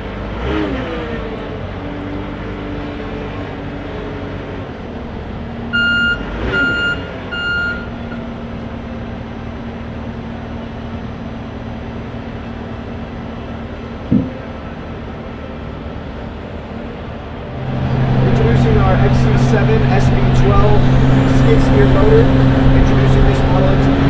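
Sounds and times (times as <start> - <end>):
loader engine running: 0.0 - 24.0
reversing alarm beeps: 5.8 - 7.9
loud thump: 14.1 - 14.4.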